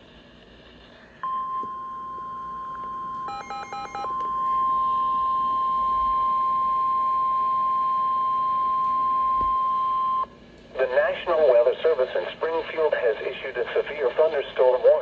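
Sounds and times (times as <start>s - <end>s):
steady high alarm tone: 1.2s - 10.3s.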